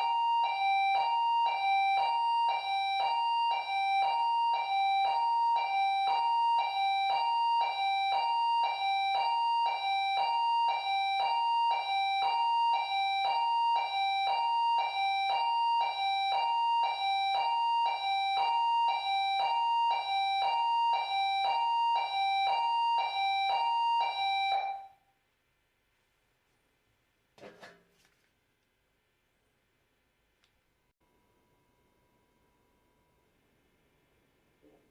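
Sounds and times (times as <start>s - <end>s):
two-tone alarm chime: 0.0s - 25.0s.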